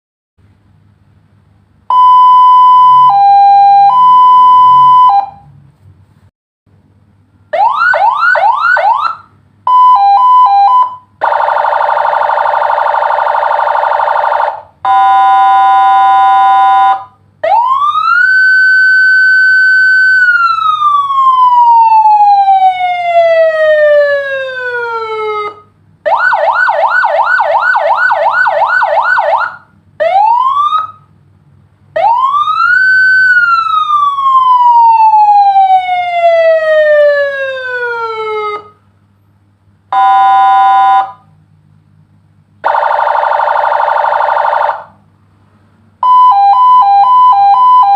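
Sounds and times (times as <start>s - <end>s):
electronic siren tones: 1.9s - 5.5s, 7.6s - 31.0s, 39.9s - 41.2s, 42.6s - 45.0s, 46.0s - 47.9s.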